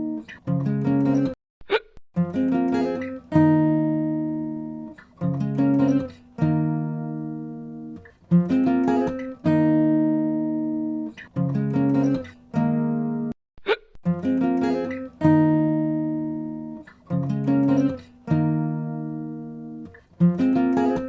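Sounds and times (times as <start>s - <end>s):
acoustic guitar music: 0.0s - 1.4s, 2.2s - 13.4s, 14.0s - 21.0s.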